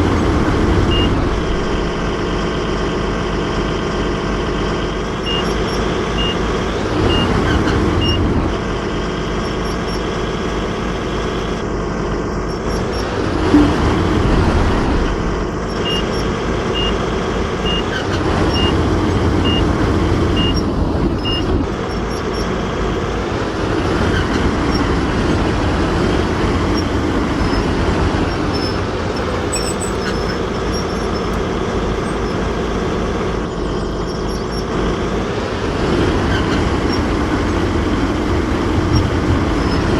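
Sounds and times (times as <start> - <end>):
diesel engines running: 0.0 - 39.9
reversing alarm beeping: 0.8 - 2.4, 5.1 - 8.4, 12.5 - 18.8, 19.4 - 22.5.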